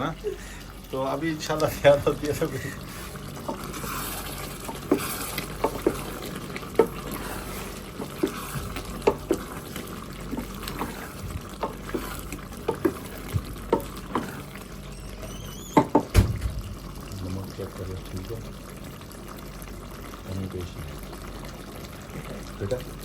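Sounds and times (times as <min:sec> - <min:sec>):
food sizzling: 0:00.0 - 0:23.0
spoon scraping cooking pot: 0:02.9 - 0:15.2.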